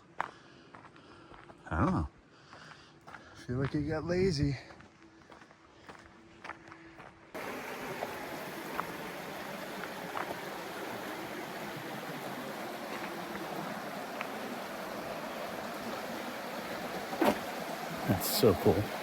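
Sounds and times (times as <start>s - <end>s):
rushing water: 7.4s - 19.0s.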